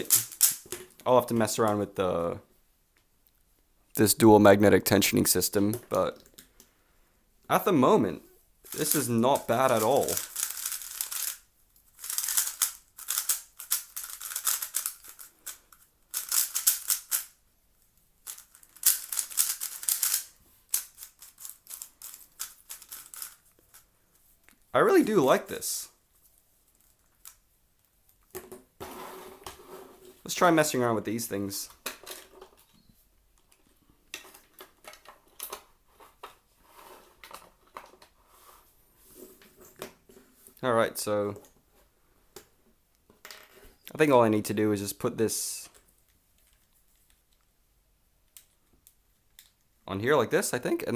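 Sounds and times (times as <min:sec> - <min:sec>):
puzzle cube turning clicks: 0:00.0 - 0:00.6, 0:08.7 - 0:11.4, 0:12.0 - 0:17.3, 0:18.3 - 0:23.4.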